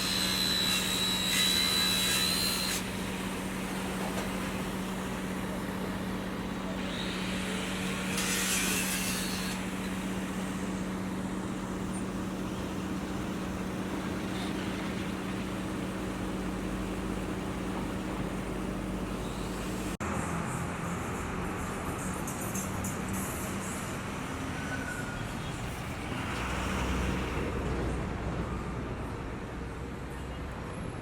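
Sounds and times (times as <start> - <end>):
traffic noise: 0.0 - 31.0
engine hum: 9.6 - 31.0.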